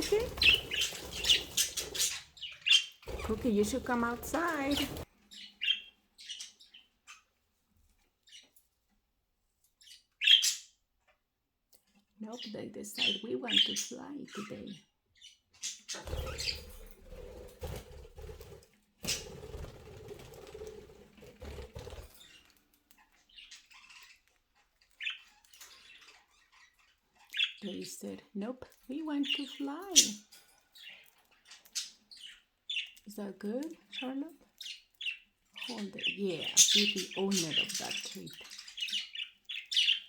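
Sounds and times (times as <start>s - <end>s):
birds fluttering wings: 0.0s - 2.4s, 3.0s - 5.1s, 16.0s - 22.6s
budgerigars chirping: 0.0s - 7.3s, 9.8s - 10.8s, 12.4s - 16.8s, 21.8s - 28.1s, 29.0s - 40.0s.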